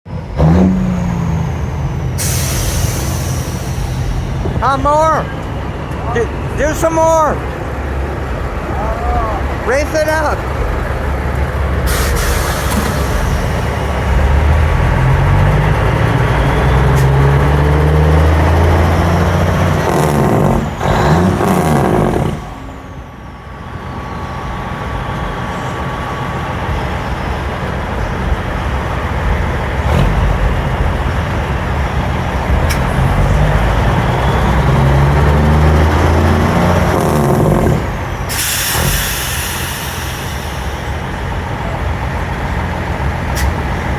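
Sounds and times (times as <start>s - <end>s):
truck diesel engine revving: 0.1s - 43.9s
loud hiss of released air: 2.2s - 4.4s, 11.9s - 14.0s, 38.3s - 41.1s.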